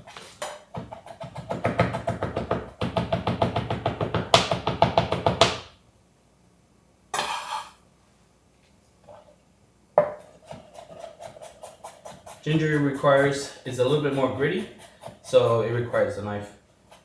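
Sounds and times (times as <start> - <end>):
knife chopping on cutting board: 0.4 - 5.7, 10.0 - 16.1.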